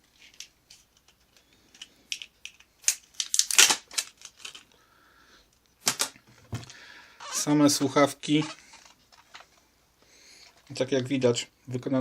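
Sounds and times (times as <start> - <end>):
plastic and paper rustling: 0.0 - 4.7, 5.8 - 9.7.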